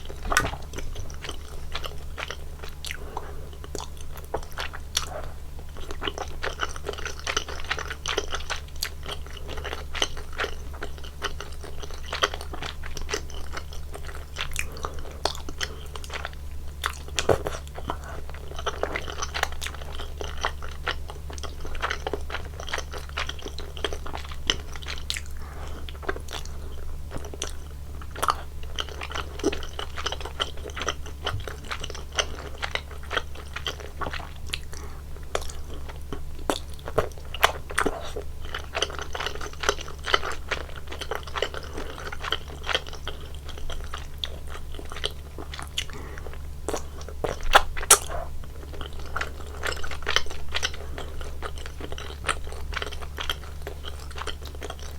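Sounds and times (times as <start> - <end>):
wet chewing and mouth clicks: 0.0 - 54.9.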